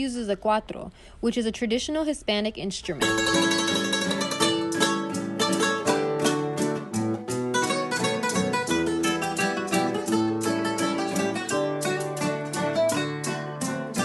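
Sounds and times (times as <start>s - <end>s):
plucked string instrument: 3.0s - 14.0s.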